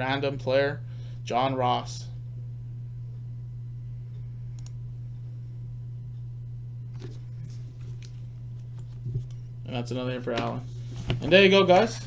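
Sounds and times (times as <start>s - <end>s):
low electrical hum: 0.0s - 12.0s
faint clicks of cards handled: 6.9s - 9.4s.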